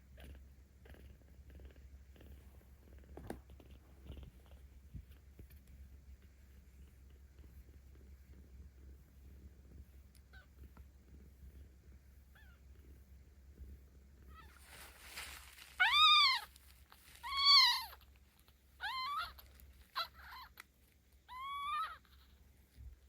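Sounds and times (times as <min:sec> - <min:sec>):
kitten mewing: 0:17.2 - 0:18.0.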